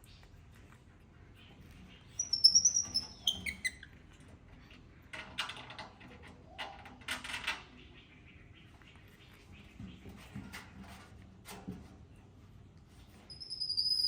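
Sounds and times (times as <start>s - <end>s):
baby monkey squealing: 2.2s - 3.9s, 13.3s - 14.0s.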